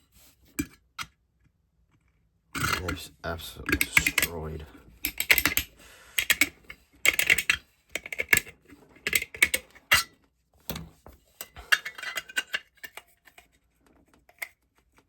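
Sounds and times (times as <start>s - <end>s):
thin metal can clicking and crinkling: 5.0s - 10.1s.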